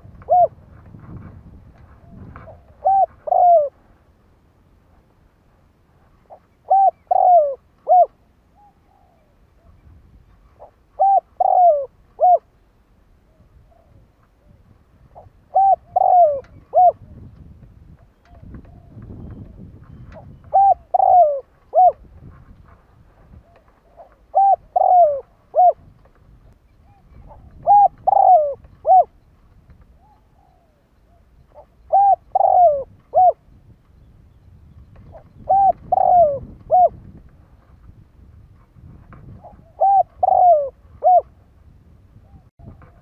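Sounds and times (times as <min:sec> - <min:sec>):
dove cooing: 0:00.0 - 0:00.8, 0:01.8 - 0:03.8, 0:06.2 - 0:09.8, 0:10.5 - 0:12.6, 0:13.3 - 0:17.3, 0:18.2 - 0:22.1, 0:23.2 - 0:25.9, 0:26.8 - 0:29.2, 0:30.0 - 0:33.5, 0:35.0 - 0:37.2, 0:39.2 - 0:41.4.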